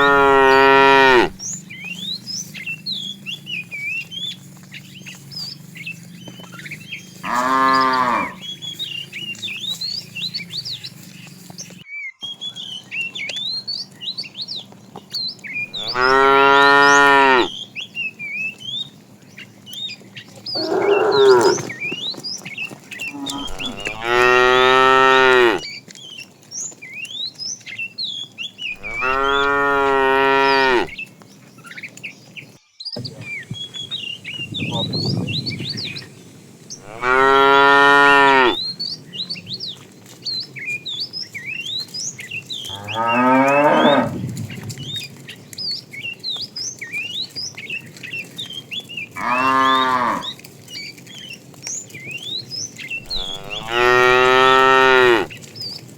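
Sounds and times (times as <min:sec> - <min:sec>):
cows mooing: 0:00.0 - 0:01.4, 0:07.2 - 0:08.6, 0:15.7 - 0:17.6, 0:20.6 - 0:21.7, 0:23.0 - 0:25.6, 0:28.8 - 0:31.0, 0:36.8 - 0:38.6, 0:42.6 - 0:44.8, 0:49.2 - 0:50.4, 0:53.0 - 0:55.3.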